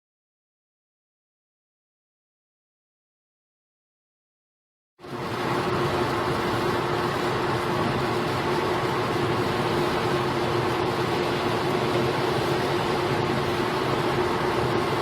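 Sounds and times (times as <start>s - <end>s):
steady droning hum: 5.0s - 15.0s.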